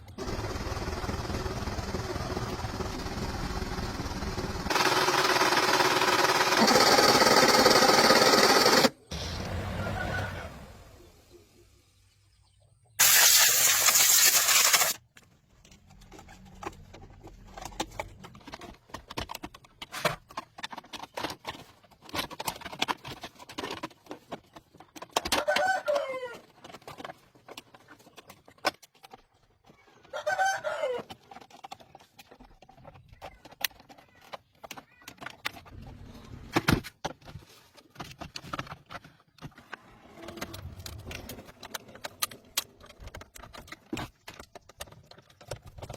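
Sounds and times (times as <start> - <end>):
loud hissing noise: 13.0 - 15.0
scattered clicks and knocks: 13.8 - 25.7, 31.1 - 45.9.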